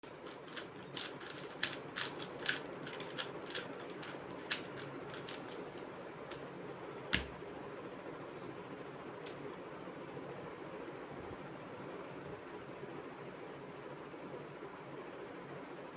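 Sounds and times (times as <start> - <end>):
plastic puzzle cube clicks: 0.2 - 5.6.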